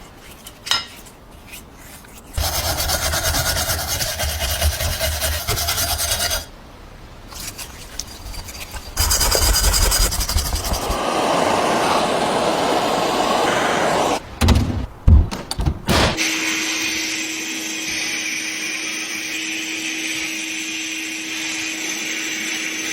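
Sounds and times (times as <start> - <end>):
power tool rasping: 2.4 - 6.5, 7.3 - 11.0.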